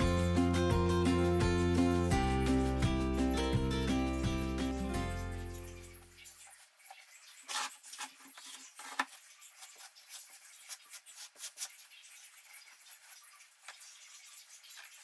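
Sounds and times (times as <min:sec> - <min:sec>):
grout scraping on tiles: 0:06.0 - 0:15.0.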